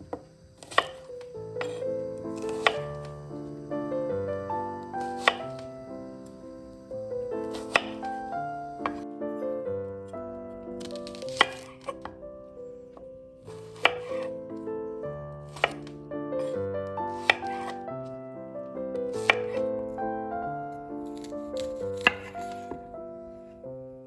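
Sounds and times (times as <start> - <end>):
gentle piano music: 0.0 - 24.0
knife chopping on cutting board: 0.1 - 3.0, 5.0 - 5.6, 7.5 - 9.0, 10.8 - 12.2, 13.5 - 14.3, 15.5 - 17.8, 19.1 - 19.6, 21.1 - 22.8.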